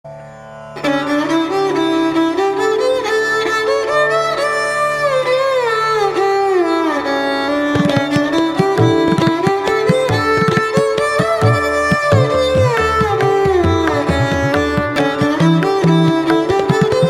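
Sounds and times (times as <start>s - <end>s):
bowed-string melody: 0.1s - 17.0s
drum strokes: 7.8s - 14.9s.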